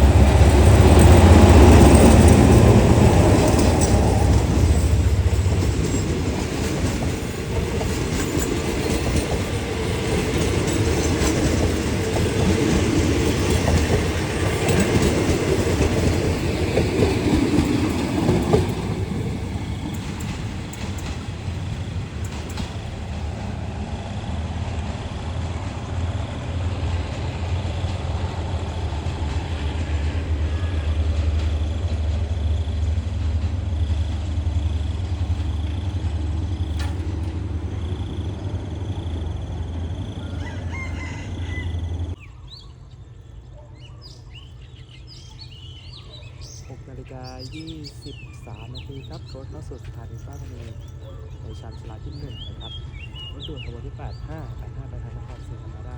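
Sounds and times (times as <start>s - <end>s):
low engine hum: 0.0s - 12.6s, 13.2s - 42.2s
train wheels clacking over rails: 0.0s - 42.2s.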